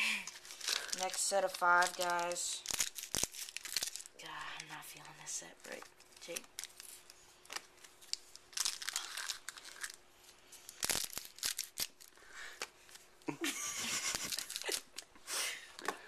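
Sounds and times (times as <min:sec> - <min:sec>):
foil wrapper tearing and crinkling: 0:00.1 - 0:04.2, 0:06.0 - 0:10.0, 0:10.6 - 0:12.2, 0:14.0 - 0:15.0.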